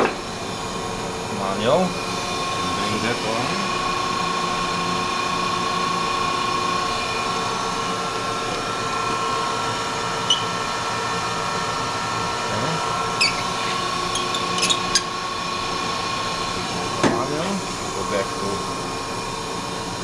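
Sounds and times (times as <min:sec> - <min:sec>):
grinder whining: 0:12.3 - 0:18.0.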